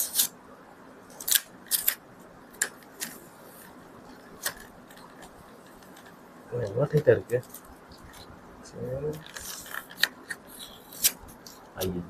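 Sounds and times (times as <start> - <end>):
plastic packaging crackling: 9.2 - 11.9.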